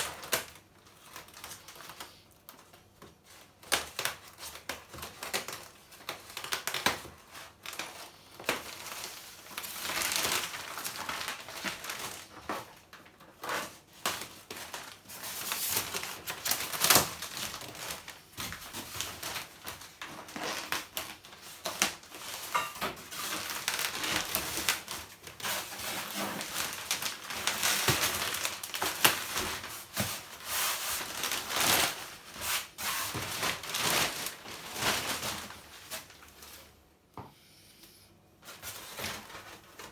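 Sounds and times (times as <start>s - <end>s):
plastic wrap crinkling: 0.0s - 36.8s, 38.4s - 39.9s
packaging tearing: 8.5s - 12.3s, 23.2s - 36.3s.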